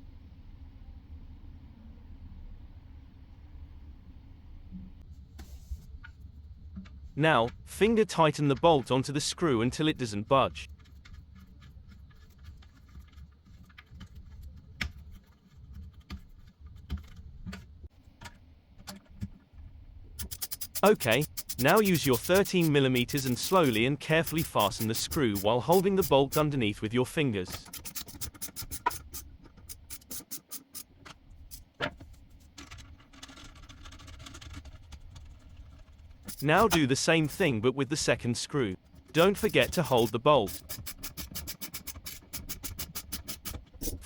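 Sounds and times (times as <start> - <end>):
handling rubs: 20.2 - 26.5, 38.8 - 44.0
ratchet clicking: 20.2 - 26.5, 27.5 - 30.9, 36.2 - 37.4, 39.0 - 44.0.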